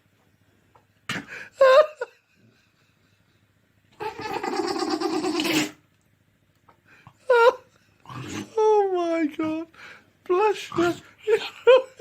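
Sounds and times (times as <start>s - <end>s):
person laughing: 1.2s - 3.4s, 7.2s - 7.8s, 11.2s - 12.0s.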